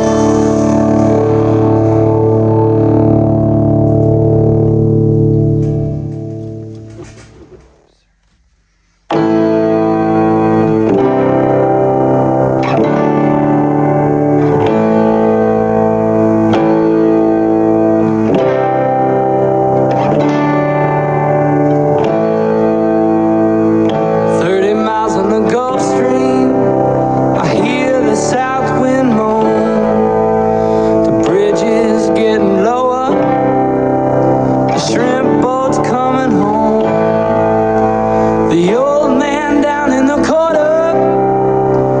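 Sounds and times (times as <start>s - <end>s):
guitar chords: 0.0s - 42.0s.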